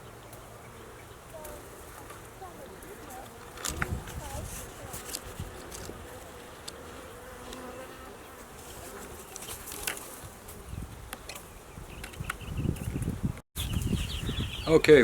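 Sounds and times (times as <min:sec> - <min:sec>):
bees buzzing: 0:00.0 - 0:12.8
single bee droning past: 0:04.8 - 0:10.8.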